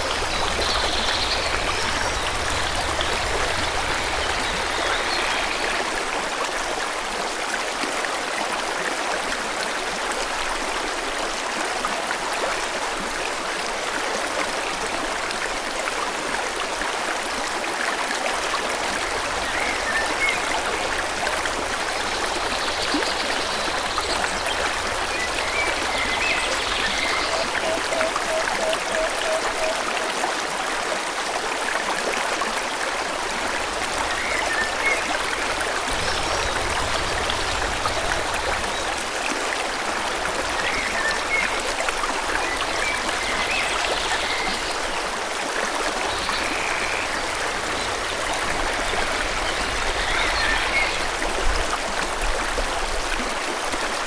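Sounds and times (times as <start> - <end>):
stream flowing: 0.0 - 54.0
birds chirping: 21.8 - 29.8, 34.1 - 39.1.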